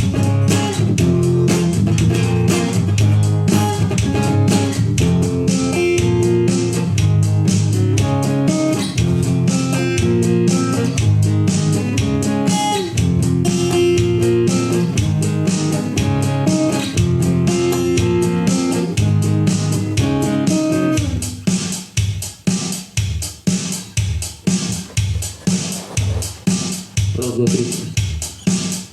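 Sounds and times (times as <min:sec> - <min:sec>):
guitar music with bass: 0:00.0 - 0:21.4.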